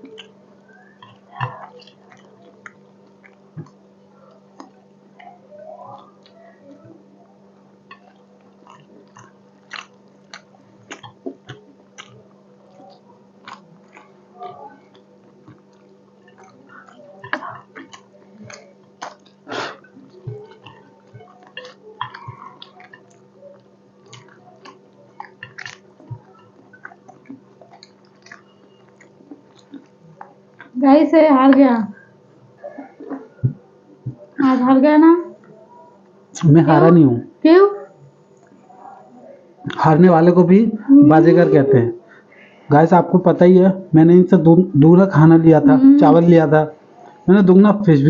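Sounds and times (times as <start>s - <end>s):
chewing with wet mouth smacks: 0.0s - 6.9s, 7.8s - 30.8s
steady low hum: 0.0s - 48.0s.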